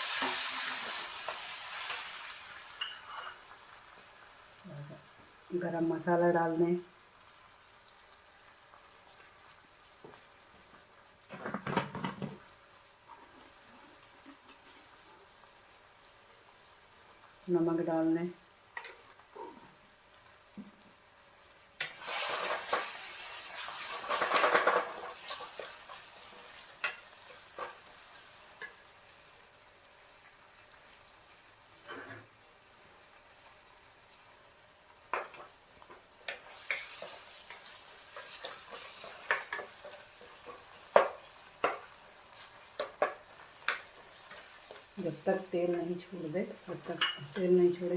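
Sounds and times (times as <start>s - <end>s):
food sizzling in hot oil: 0.0s - 47.9s
spoon scraping a pan: 2.8s - 3.5s, 36.3s - 44.9s, 46.8s - 47.5s.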